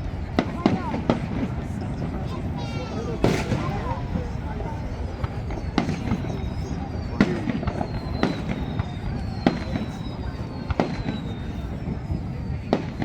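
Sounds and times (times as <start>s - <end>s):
fireworks bangs: 0.0s - 13.0s
high descending whistles: 5.2s - 13.0s.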